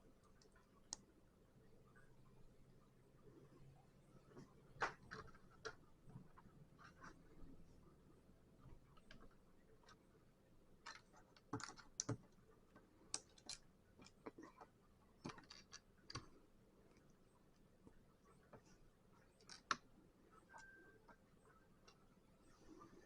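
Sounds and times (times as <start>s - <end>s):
plastic bricks clicking: 10.8s - 12.2s, 13.1s - 14.6s, 15.2s - 16.3s.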